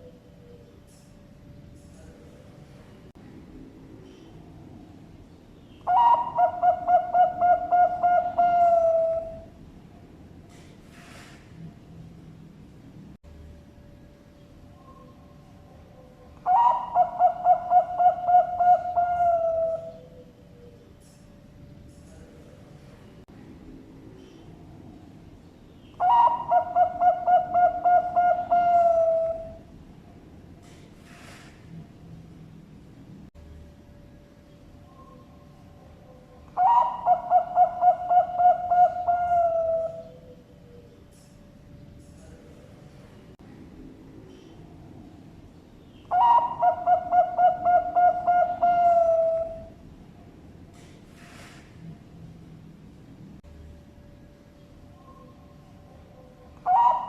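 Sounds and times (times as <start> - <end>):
dove cooing: 5.8 - 9.6, 14.8 - 20.9, 26.0 - 29.7, 34.9 - 41.3, 46.0 - 49.8, 55.0 - 57.0.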